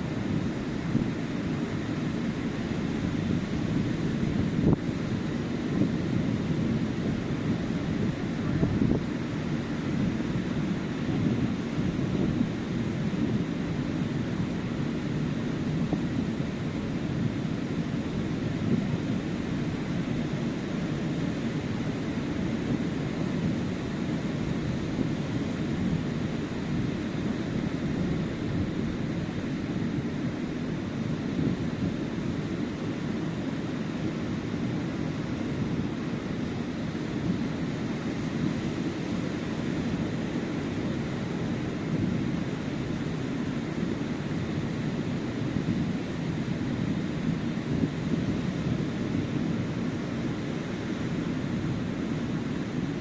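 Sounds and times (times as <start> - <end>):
surf washing onto beach: 0.0 - 53.0
wind buffeting microphone: 0.1 - 33.1.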